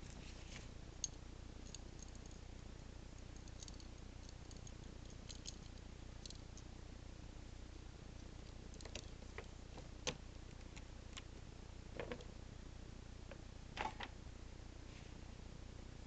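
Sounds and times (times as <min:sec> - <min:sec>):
faint low hum: 0:00.0 - 0:16.0.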